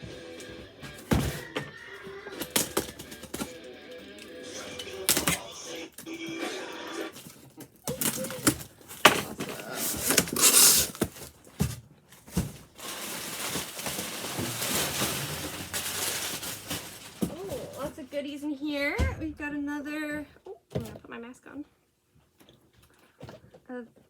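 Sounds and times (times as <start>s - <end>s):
packaging rustling and tearing: 2.3s - 6.2s, 7.1s - 18.0s.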